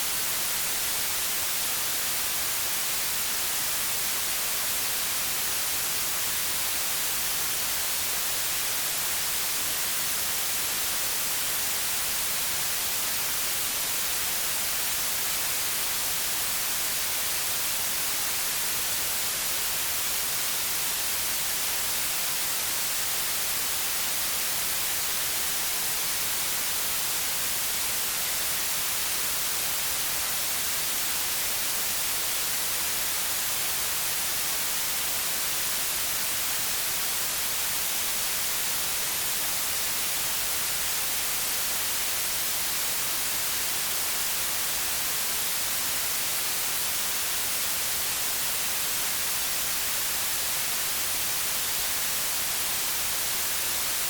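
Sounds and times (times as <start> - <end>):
white noise hiss: 0.0 - 54.0.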